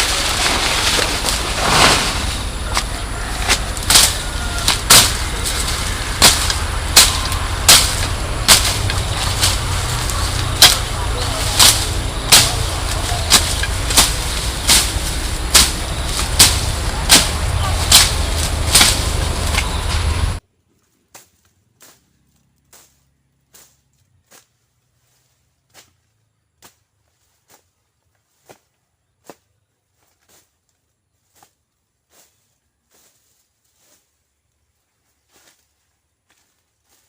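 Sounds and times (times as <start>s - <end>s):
low rumble: 0.0s - 20.4s
sharp cracks: 0.0s - 20.4s.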